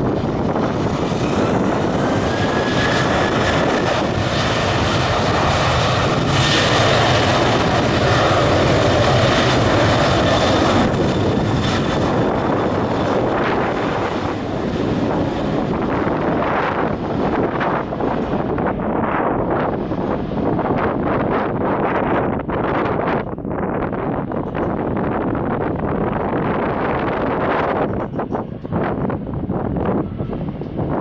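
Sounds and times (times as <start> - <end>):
loud rushing drone: 0.0 - 23.2.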